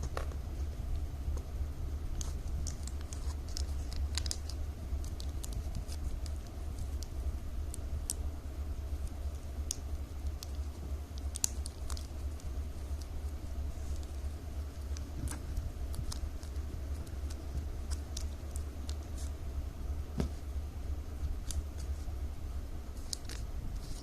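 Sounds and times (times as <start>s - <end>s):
steady low hum: 0.0s - 24.0s
plastic strips clicking and crinkling: 2.1s - 19.4s, 22.9s - 24.0s.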